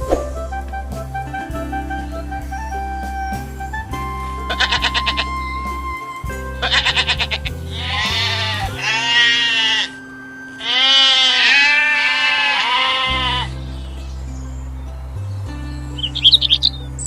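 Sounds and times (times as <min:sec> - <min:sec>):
background music: 0:00.0 - 0:17.0
farm animal calls: 0:04.3 - 0:14.0.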